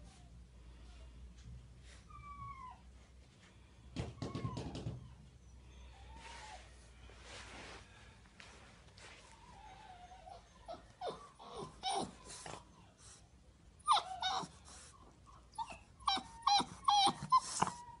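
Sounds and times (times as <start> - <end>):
puppy whining and yipping: 1.9 - 3.0, 4.2 - 6.8, 9.2 - 13.2, 13.8 - 18.0.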